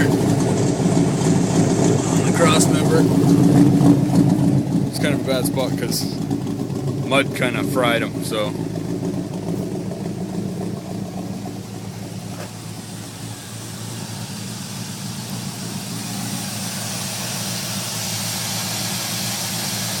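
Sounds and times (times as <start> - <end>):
truck engine idling: 0.0 - 20.0
hiss: 13.2 - 20.0.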